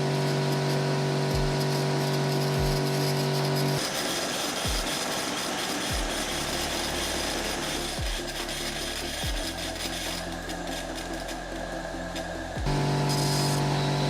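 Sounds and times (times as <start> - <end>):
crackling electrical hiss: 0.0 - 14.0
low hum: 5.9 - 14.0.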